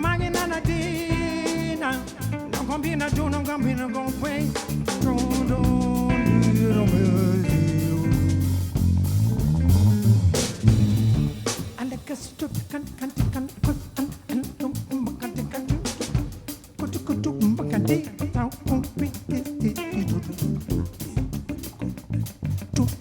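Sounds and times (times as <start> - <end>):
wavering vocals: 0.0 - 10.3, 11.0 - 21.3
bass guitar and drums playing: 0.0 - 23.0
heavy drum hit: 5.0 - 11.8.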